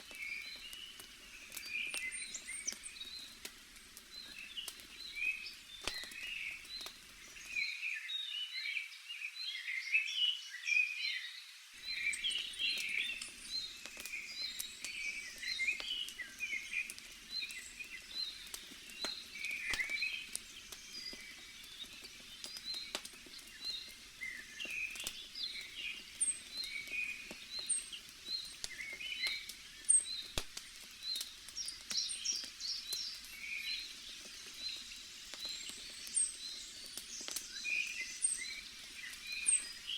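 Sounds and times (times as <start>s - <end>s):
birds chirping: 0.0s - 7.7s, 11.8s - 39.9s
crackling bonfire: 0.0s - 7.7s, 11.7s - 39.9s.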